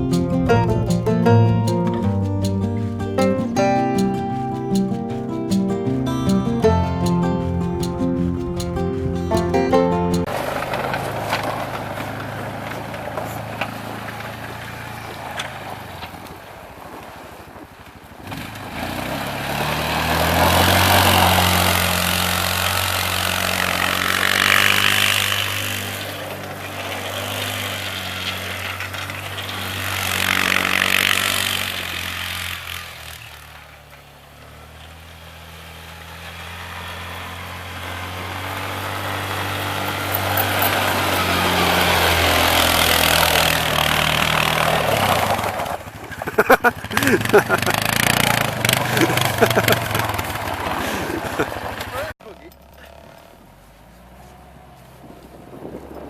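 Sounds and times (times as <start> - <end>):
diesel engine revving: 0.0 - 16.0, 18.2 - 56.0
wind or tyre hiss: 9.8 - 52.0.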